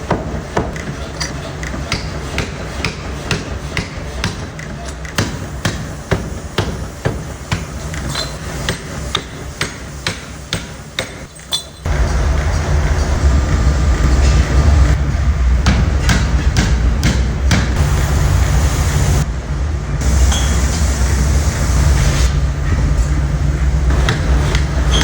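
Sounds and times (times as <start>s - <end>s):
forging hammer striking steel: 1.9s - 8.1s, 8.7s - 11.3s, 15.6s - 17.9s
low machine rumble: 11.9s - 25.0s.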